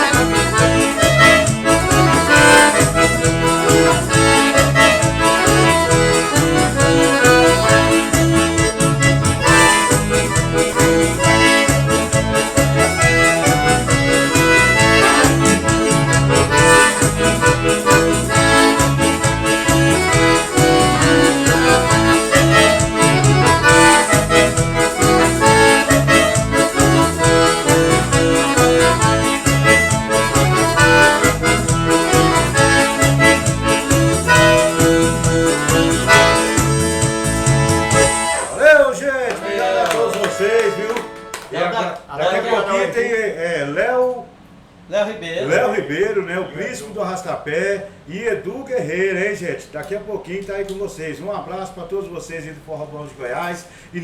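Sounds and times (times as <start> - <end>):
driving low beat: 0.0 - 38.6
band playing accordion music: 0.0 - 41.8.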